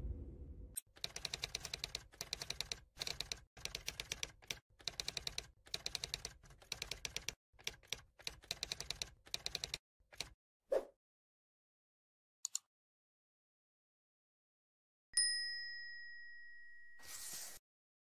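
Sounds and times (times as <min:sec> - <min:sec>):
rapid typing clicks: 0:00.9 - 0:10.3.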